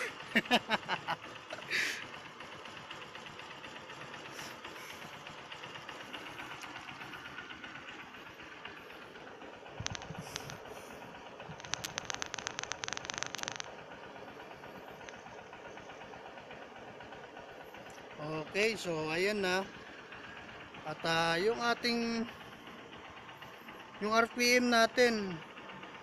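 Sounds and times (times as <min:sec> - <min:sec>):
motorcycle engine idling: 0:00.0 - 0:26.0
sharp clicks: 0:09.8 - 0:10.6, 0:11.5 - 0:13.7.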